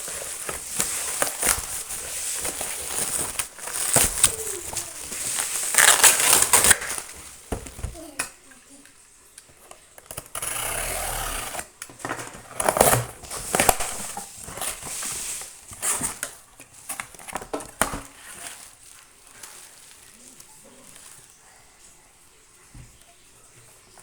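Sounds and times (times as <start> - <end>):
packaging crinkling and rustling: 0.0 - 8.1, 11.5 - 21.5.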